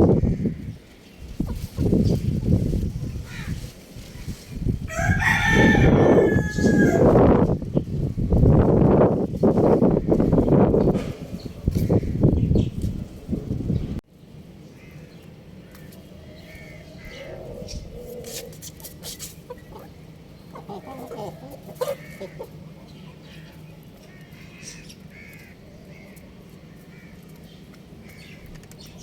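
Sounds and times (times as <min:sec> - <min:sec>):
young rooster clucking and chirping: 0:04.9 - 0:07.2, 0:19.2 - 0:23.6.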